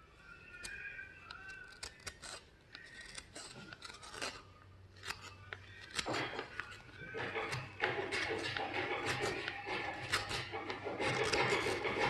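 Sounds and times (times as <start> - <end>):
metallic clicks and scrapes: 0.6 - 12.0.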